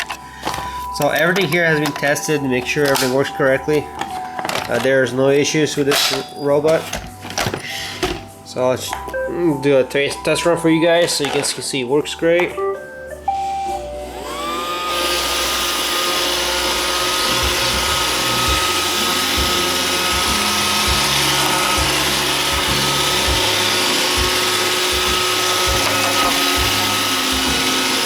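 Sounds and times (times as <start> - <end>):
robot vacuum motor whirring: 14.0 - 28.0.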